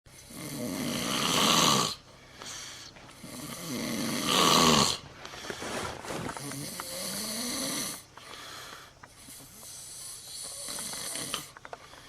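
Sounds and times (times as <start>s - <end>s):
person snoring: 0.2s - 5.0s, 5.6s - 11.6s
faint breath: 2.0s - 3.5s, 5.0s - 12.0s.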